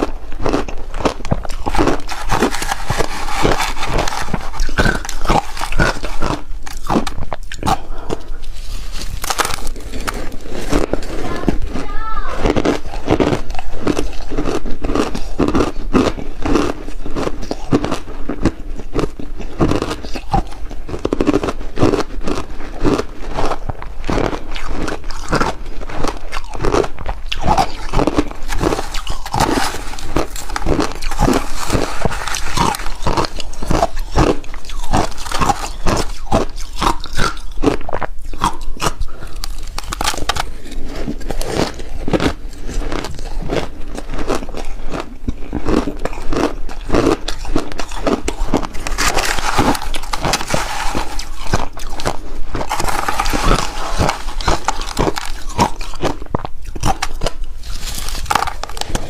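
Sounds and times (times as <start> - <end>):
crunching and chewing ice: 0.0 - 59.0.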